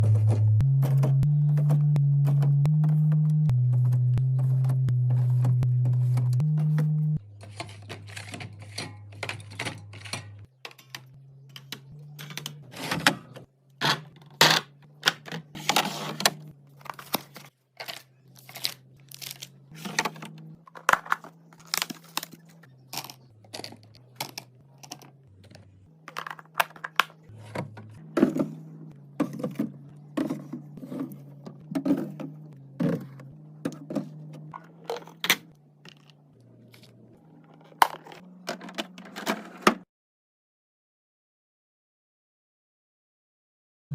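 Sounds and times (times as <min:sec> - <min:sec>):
packaging crinkling and rustling: 0:16.8 - 0:25.1.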